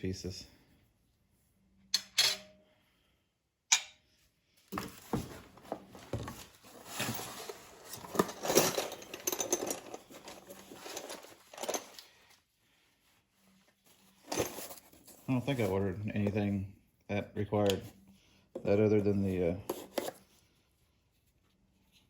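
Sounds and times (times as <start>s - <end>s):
rustling and clattering of parts: 4.6s - 12.5s, 13.6s - 16.6s, 18.5s - 20.4s.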